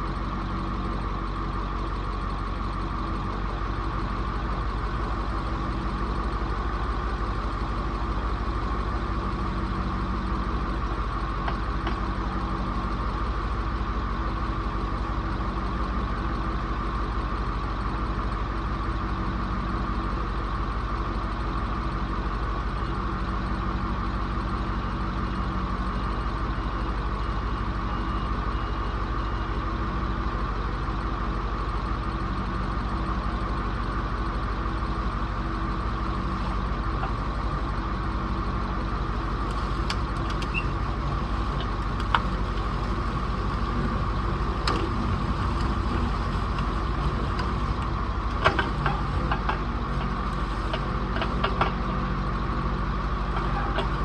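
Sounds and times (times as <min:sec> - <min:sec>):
vehicle engine running steadily: 0:00.0 - 0:54.0.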